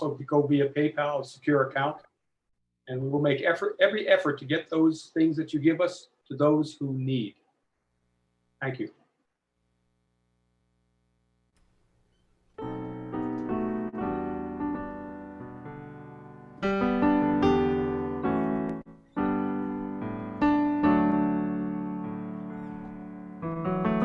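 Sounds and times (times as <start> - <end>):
piano chords ringing: 12.6 - 24.0.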